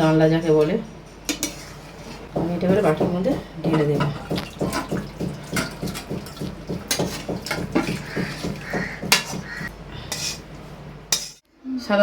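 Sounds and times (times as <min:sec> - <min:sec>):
metal spoon scraping a pot: 0:01.3 - 0:03.0, 0:05.5 - 0:10.5, 0:11.1 - 0:11.4.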